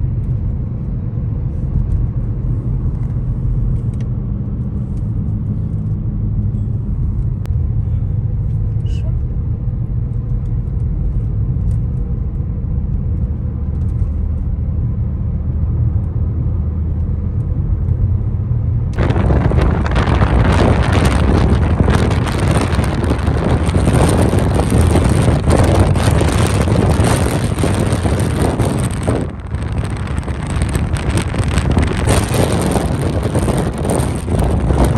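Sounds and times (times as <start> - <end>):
car road and engine rumble: 0.0 - 34.9
loud rushing noise: 19.0 - 34.9.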